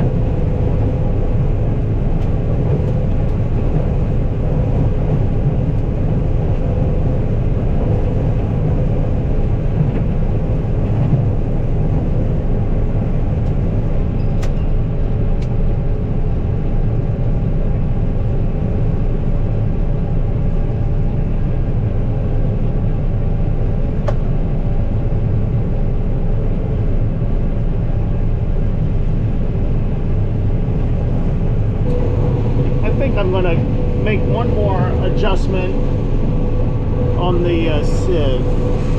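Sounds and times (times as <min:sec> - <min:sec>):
combine harvester running: 0:00.0 - 0:15.5, 0:27.3 - 0:38.9.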